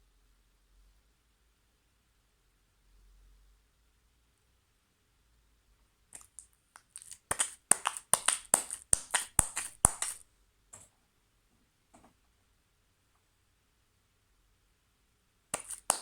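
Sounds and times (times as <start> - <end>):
slime squished by hand: 6.2 - 10.2, 15.6 - 16.0.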